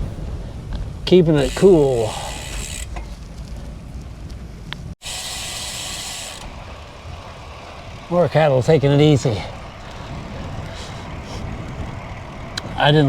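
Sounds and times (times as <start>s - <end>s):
wind and road noise: 0.0s - 13.0s
bike freehub ticking: 1.4s - 3.1s, 5.0s - 8.1s.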